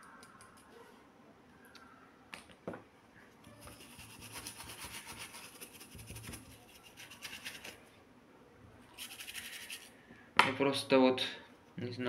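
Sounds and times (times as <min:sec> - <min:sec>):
stiff brush scrubbing circuit board: 0:03.6 - 0:07.8, 0:09.0 - 0:09.9.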